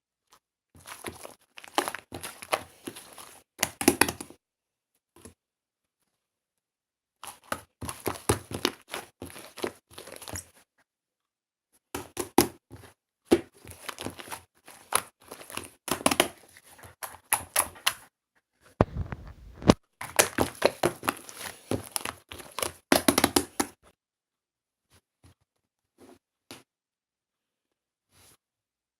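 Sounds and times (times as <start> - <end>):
slime squishing and popping: 0.8 - 4.3, 18.8 - 23.8
low muffled rumble: 18.8 - 19.8.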